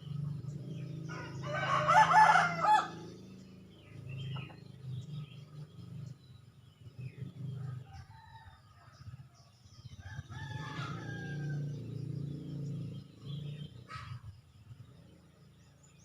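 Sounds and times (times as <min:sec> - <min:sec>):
small birds chirping: 0:00.0 - 0:16.0
rooster crowing: 0:01.0 - 0:03.2, 0:07.8 - 0:09.0, 0:10.0 - 0:12.0.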